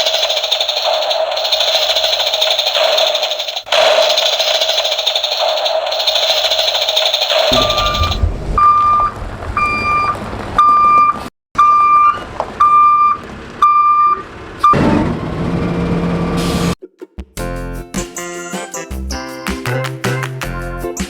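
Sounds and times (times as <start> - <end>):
reversing alarm beeping: 7.4 - 14.8.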